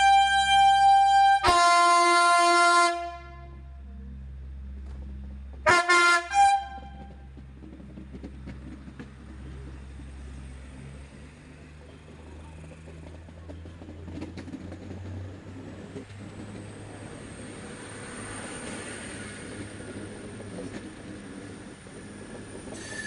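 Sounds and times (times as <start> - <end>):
train air horn: 0.0 - 3.7, 5.6 - 7.1.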